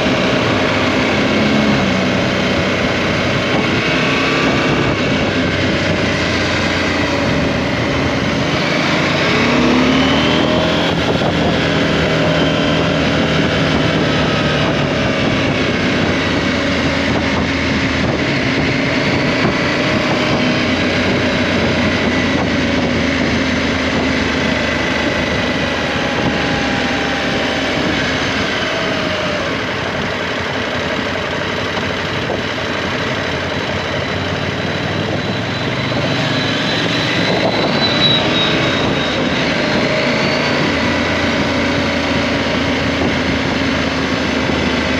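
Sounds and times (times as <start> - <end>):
motorcycle engine running: 0.0 - 44.9
wind noise: 0.0 - 44.9.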